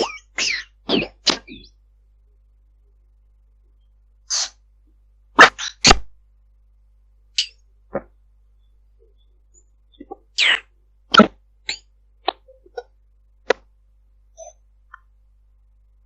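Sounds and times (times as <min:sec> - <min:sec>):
short sharp noise bursts: 0:04.2 - 0:04.7, 0:05.4 - 0:06.2.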